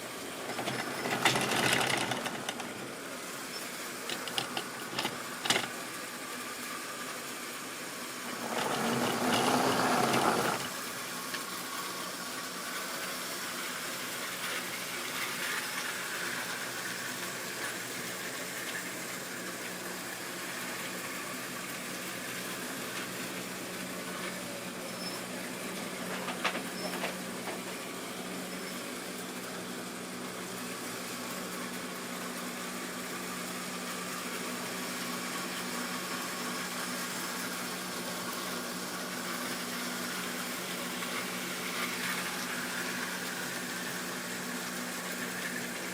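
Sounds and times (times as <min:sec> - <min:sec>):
wheel and rail noise: 0:00.0 - 0:29.7, 0:30.3 - 0:45.9
model train electric motor hum: 0:00.0 - 0:45.9
wheels clicking over rail joints: 0:00.4 - 0:02.9, 0:03.6 - 0:05.9, 0:08.3 - 0:11.4.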